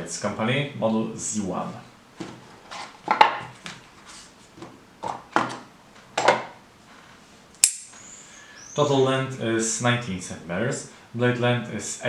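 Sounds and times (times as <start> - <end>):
folding knife click: 7.6 - 7.9.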